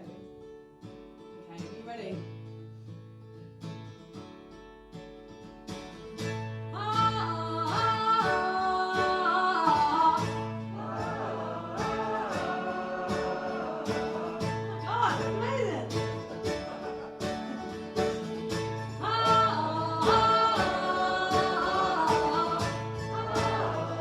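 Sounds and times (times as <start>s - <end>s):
acoustic guitar strumming chords: 0.0s - 24.0s
audience singing along wordlessly: 9.1s - 15.4s, 16.0s - 24.0s.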